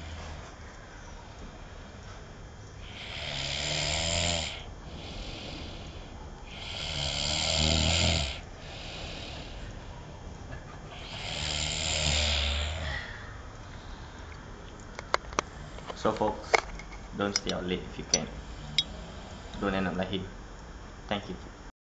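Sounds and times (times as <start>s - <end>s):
man snoring: 2.8s - 9.6s, 11.0s - 13.1s.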